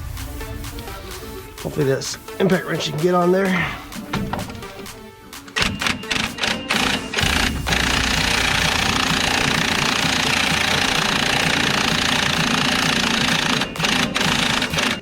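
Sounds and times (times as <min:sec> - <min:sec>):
impact wrench hammering: 0:04.0 - 0:15.0.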